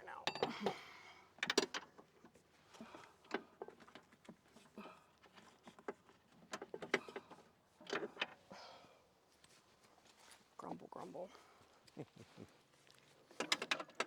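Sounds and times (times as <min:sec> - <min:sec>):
loud metallic clinks: 0:00.3 - 0:00.7.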